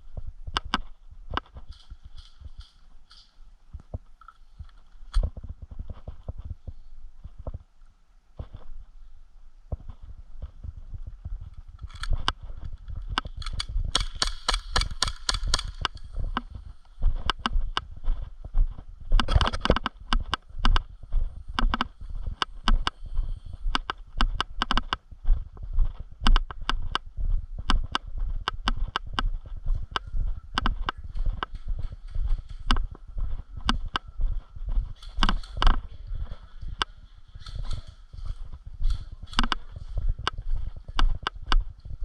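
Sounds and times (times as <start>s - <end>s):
footsteps walking: 0.0s - 7.7s, 8.4s - 9.1s, 9.7s - 42.0s
rapid clicks: 13.1s - 16.5s.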